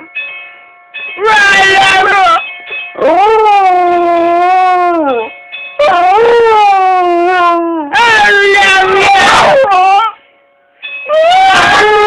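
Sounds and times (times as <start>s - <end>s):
dog howling: 1.2s - 2.4s, 3.0s - 10.2s, 11.1s - 12.0s.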